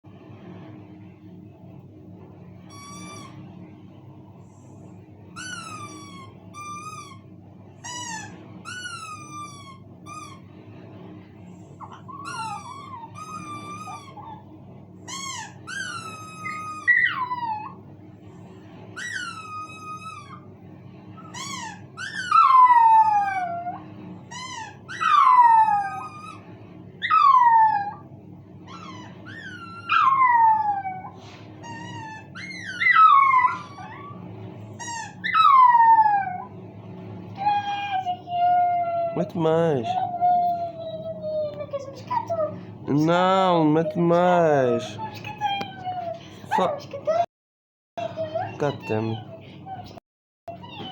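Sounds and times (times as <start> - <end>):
squeaky toy squeaking: 2.7 - 3.4, 5.4 - 7.2, 7.8 - 10.4, 11.9 - 14.4, 15.1 - 17.2, 21.2 - 23.1, 24.3 - 26.4, 31.7 - 34.2, 34.8 - 35.6
dog howling: 5.4 - 7.2, 7.9 - 10.4, 11.8 - 14.5, 15.1 - 17.8, 19.0 - 20.5, 21.2 - 26.4, 27.0 - 28.1, 28.7 - 36.6, 37.4 - 42.5, 43.4 - 47.3.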